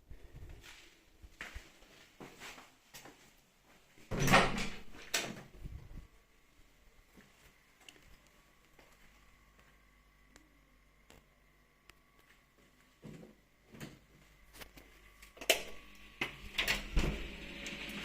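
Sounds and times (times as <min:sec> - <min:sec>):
quiet hum: 0:04.6 - 0:18.0.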